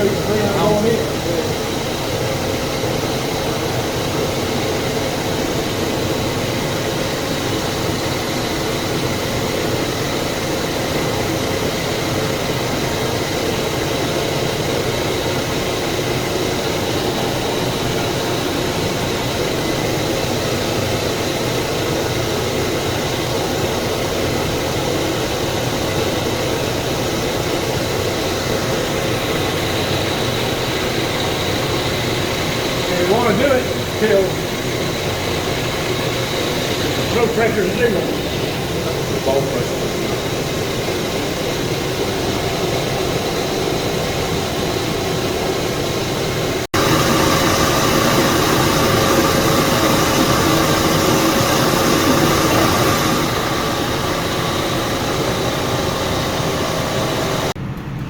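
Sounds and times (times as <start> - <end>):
refrigerant recovery machine humming: 0.0 - 58.0
faint high whine: 23.4 - 58.0.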